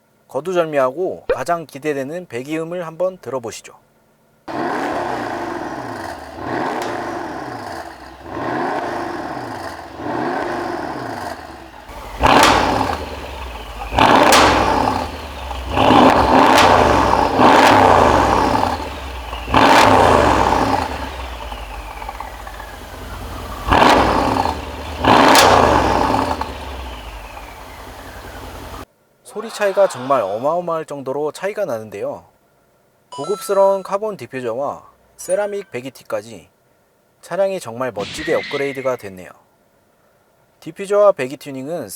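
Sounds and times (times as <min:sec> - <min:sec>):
car engine revving: 0:04.5 - 0:28.8.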